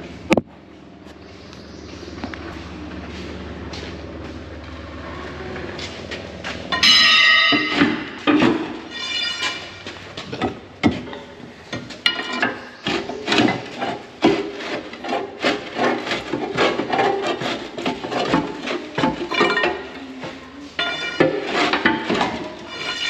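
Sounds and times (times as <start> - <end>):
ringing metal clang: 6.7 - 9.9, 20.8 - 23.0
pry bar scraping and knocking on metal: 6.7 - 20.0, 20.8 - 23.0.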